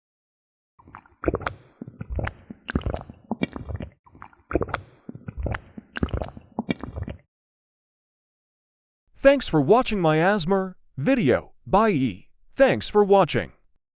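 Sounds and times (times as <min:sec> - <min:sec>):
mouth clicks: 0:00.8 - 0:07.2
gulping and swallowing: 0:00.8 - 0:07.3
low gurgle: 0:00.8 - 0:07.3.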